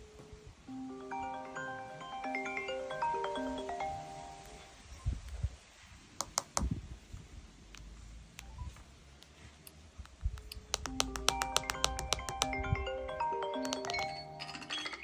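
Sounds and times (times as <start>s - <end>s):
phone ringtone melody: 0.7s - 4.9s, 10.9s - 15.0s
sharp clicks: 6.2s - 6.8s, 7.7s - 8.5s, 9.2s - 12.7s, 13.6s - 14.2s.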